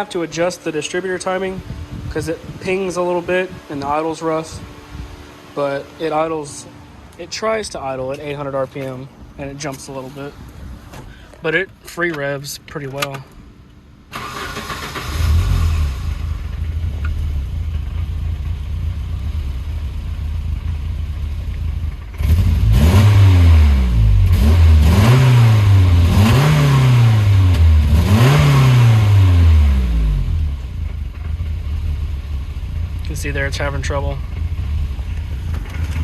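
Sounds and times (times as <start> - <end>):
car engine idling and revving: 0.0 - 36.0
engine pinging: 30.6 - 36.0.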